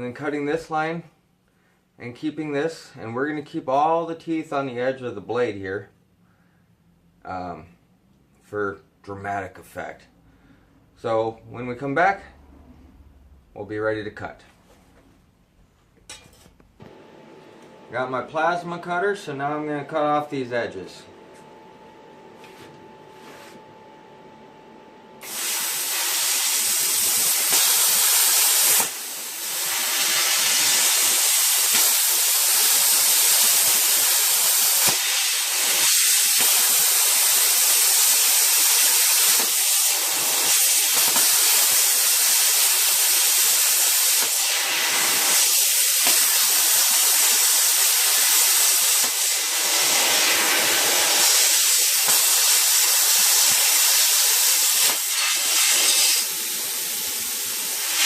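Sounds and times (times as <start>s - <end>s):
plasma cutter hissing: 25.2s - 58.0s.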